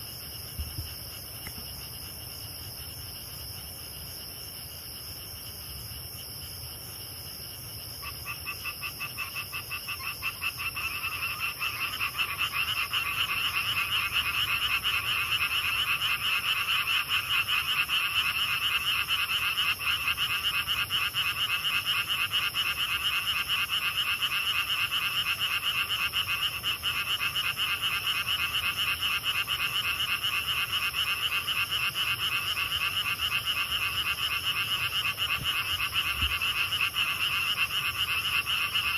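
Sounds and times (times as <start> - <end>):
frogs calling: 8.0 - 38.9.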